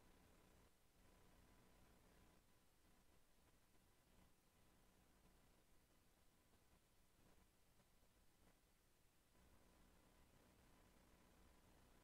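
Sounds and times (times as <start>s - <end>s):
faint background hiss: 0.0s - 12.0s
faint steady tone: 0.0s - 12.0s.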